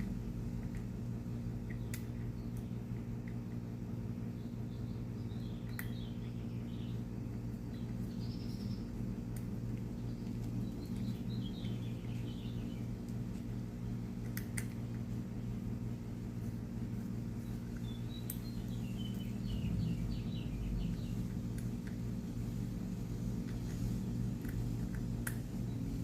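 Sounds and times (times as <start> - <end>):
steady low hum: 0.0 - 26.0
bird chirping: 4.3 - 9.0, 9.9 - 13.0, 17.4 - 21.4.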